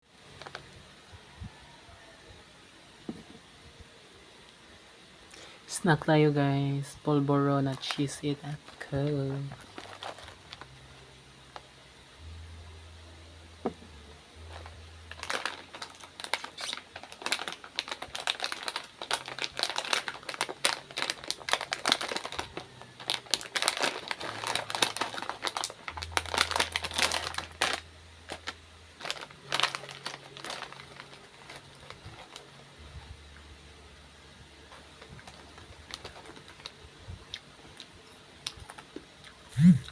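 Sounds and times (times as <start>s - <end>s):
snack packaging crinkling: 7.2s - 10.8s, 14.5s - 32.6s, 34.6s - 39.4s.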